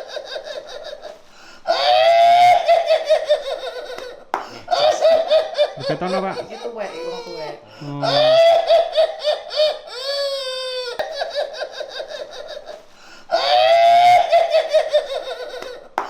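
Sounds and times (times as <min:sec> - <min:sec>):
woman cackling laughter: 0:04.7 - 0:15.8.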